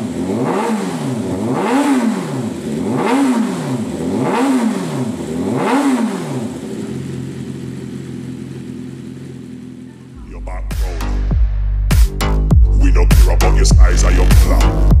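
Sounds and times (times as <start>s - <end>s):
motorcycle engine idling: 0.0s - 10.4s
motorcycle engine revving: 0.0s - 11.6s.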